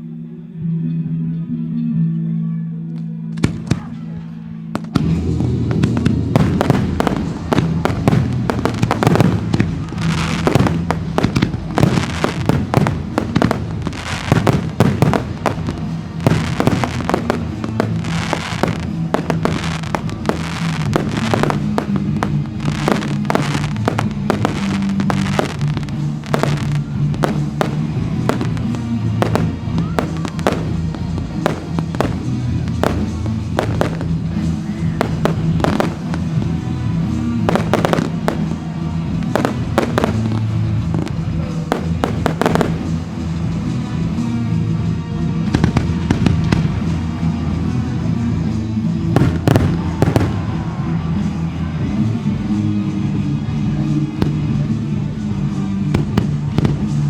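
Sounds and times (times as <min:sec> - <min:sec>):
music with steady bass: 0:00.0 - 0:57.0
fireworks bangs: 0:03.4 - 0:04.1, 0:04.7 - 0:57.0.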